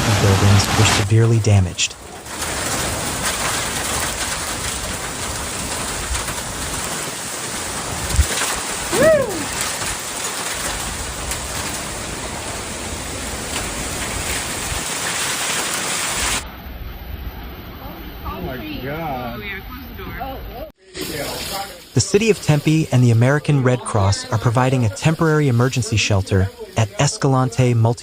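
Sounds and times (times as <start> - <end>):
heavy rain: 0.0 - 19.2, 20.9 - 28.0
rising and falling call: 8.9 - 9.6.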